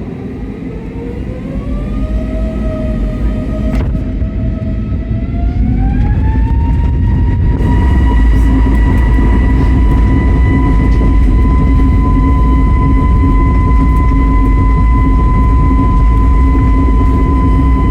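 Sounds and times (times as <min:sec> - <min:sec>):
jet engines spooling up: 0:00.0 - 0:17.9.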